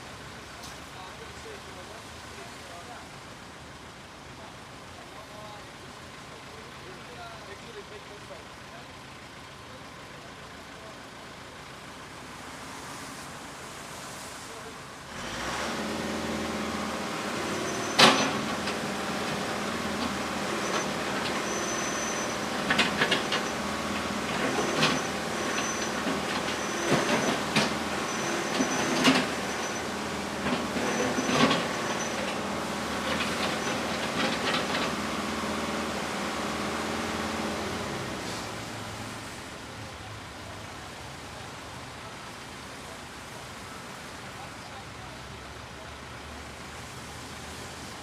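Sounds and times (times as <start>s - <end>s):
construction machine engine running: 14.6s - 47.2s
high squeal: 17.5s - 18.4s, 20.6s - 22.6s, 24.5s - 30.0s
metal clanks and clatters: 17.8s - 18.8s, 20.0s - 32.4s, 33.0s - 35.0s.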